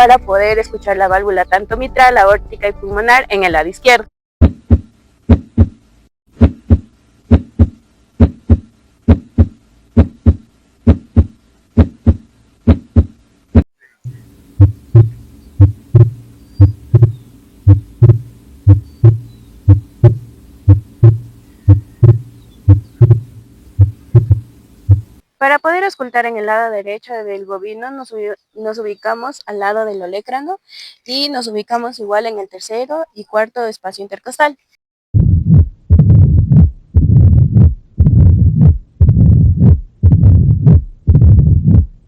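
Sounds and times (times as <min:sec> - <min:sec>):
heartbeat through stethoscope: 0:04.4 - 0:25.2, 0:35.1 - 0:42.0
steady low hum: 0:04.4 - 0:25.2, 0:35.2 - 0:42.0.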